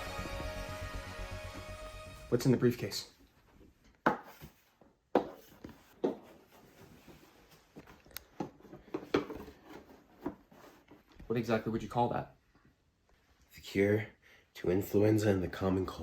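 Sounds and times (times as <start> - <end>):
faint rubbing and shuffling: 3.2 - 11.7.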